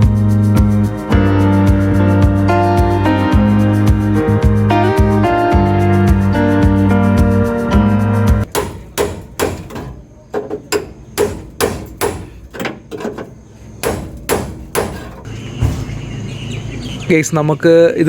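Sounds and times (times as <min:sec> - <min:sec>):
hammer striking sheet metal: 0:08.5 - 0:12.8, 0:13.8 - 0:16.0.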